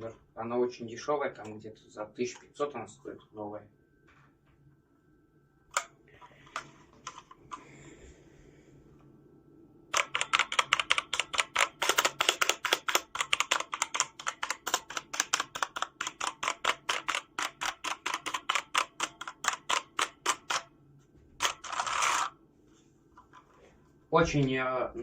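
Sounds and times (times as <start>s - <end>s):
mechanical keyboard clacking: 9.9s - 20.7s.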